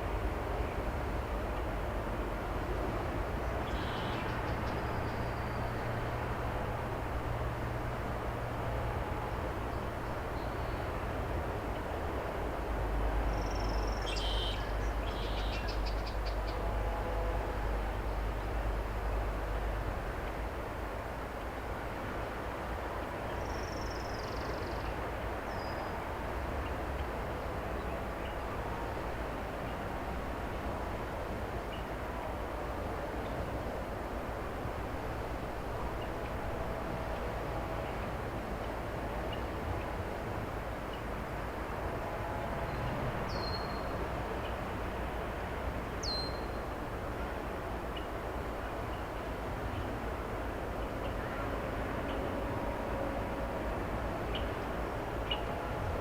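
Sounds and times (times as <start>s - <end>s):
low rumble and hiss: 0.0s - 56.0s.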